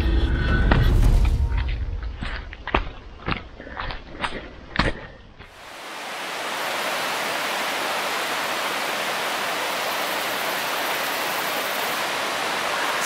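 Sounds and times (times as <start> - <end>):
river water rushing: 5.5 - 13.0.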